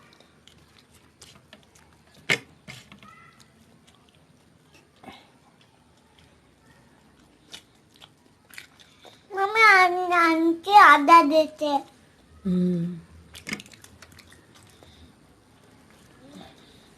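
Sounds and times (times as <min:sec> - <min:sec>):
eating clicks and smacks: 0:13.3 - 0:15.0.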